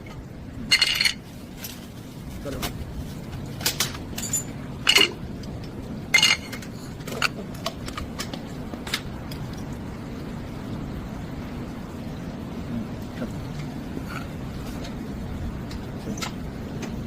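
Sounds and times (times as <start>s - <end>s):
metal tools clinking: 0.7s - 1.8s, 3.6s - 5.2s, 6.1s - 7.5s.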